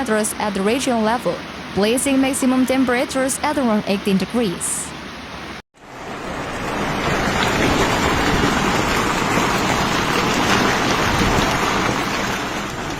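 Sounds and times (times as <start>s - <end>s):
heavy rain pelting down: 5.8s - 12.9s.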